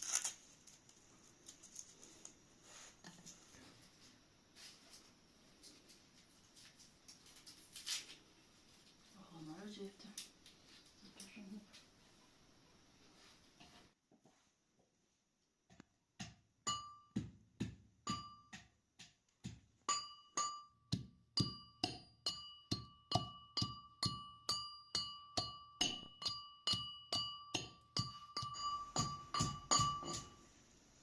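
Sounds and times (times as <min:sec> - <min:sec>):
utensil striking metallic surface: 0:19.9 - 0:30.4.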